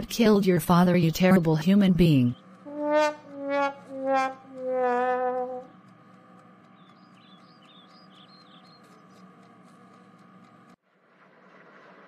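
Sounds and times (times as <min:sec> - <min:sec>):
sad trombone notes: 0:02.7 - 0:05.7.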